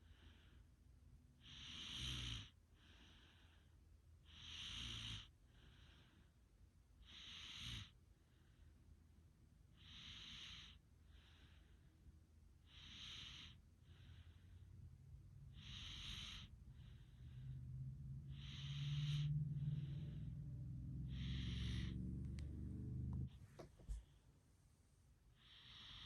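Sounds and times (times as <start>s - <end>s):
person snoring: 15.6s - 16.5s, 18.3s - 20.4s, 21.0s - 23.3s
low rumble: 16.6s - 23.4s.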